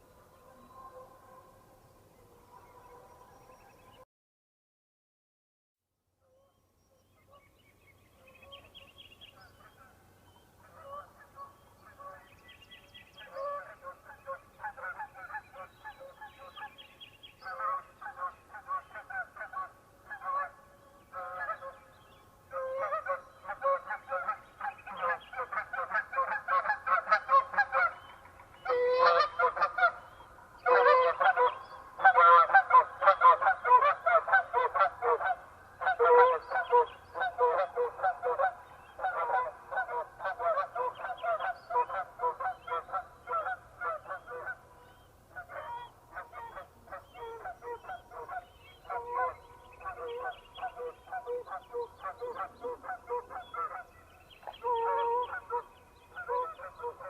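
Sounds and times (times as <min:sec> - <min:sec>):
geese honking: 0:28.6 - 0:44.7, 0:45.4 - 0:57.0.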